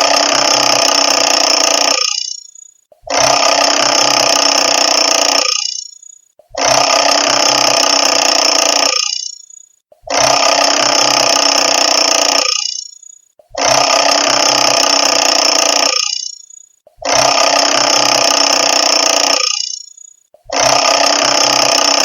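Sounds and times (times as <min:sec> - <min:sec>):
mechanical alarm clock bell ringing: 0:01.3 - 0:02.8, 0:04.4 - 0:06.3, 0:08.8 - 0:09.8, 0:11.8 - 0:13.3, 0:15.0 - 0:16.8, 0:18.7 - 0:20.3.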